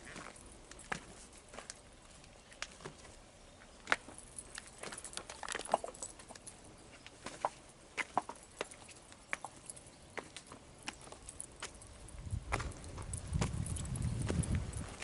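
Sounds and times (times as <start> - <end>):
footsteps on gravel: 0.0 - 15.0.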